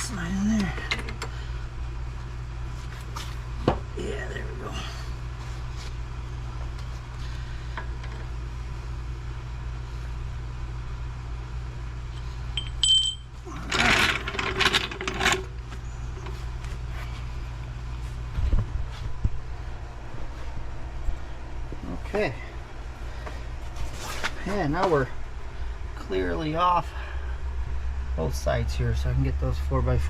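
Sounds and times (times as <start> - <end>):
low hum: 0.0 - 30.0
loud rough scraping and rattling: 13.5 - 15.6.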